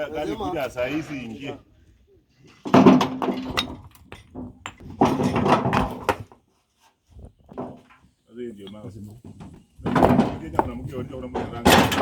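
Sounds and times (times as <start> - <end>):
stones clattering onto a pile: 2.6 - 6.4.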